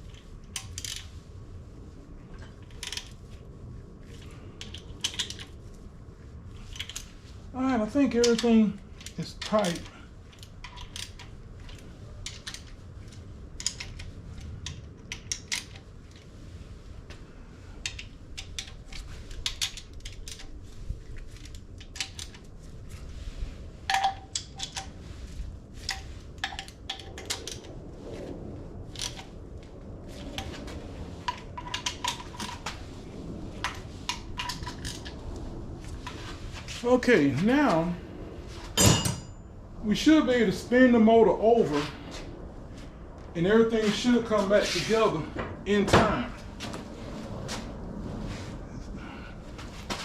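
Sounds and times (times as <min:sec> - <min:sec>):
low rumble: 0:24.9 - 0:50.0.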